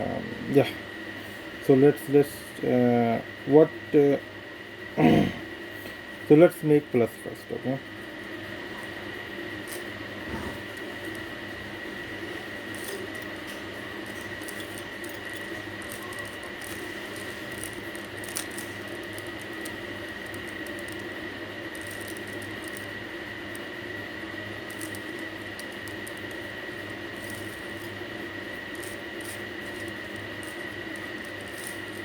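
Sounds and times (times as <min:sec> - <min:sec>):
steady background hum: 0:00.0 - 0:32.0
puzzle cube clicking and rasping: 0:12.6 - 0:23.7, 0:24.6 - 0:32.0.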